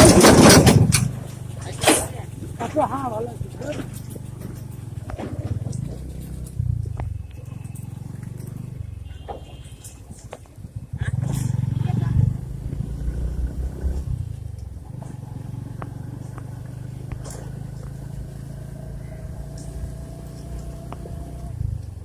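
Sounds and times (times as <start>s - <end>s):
motorcycle engine running: 0.0s - 22.0s
faint clicks: 19.2s - 22.0s.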